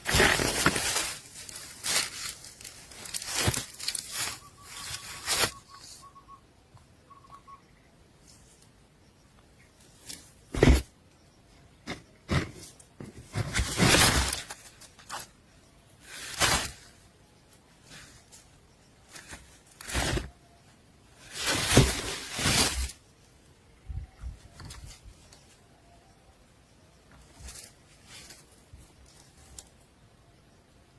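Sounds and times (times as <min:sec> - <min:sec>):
birds rustling in a nest: 0:00.0 - 0:06.4, 0:11.8 - 0:23.4, 0:26.9 - 0:29.9.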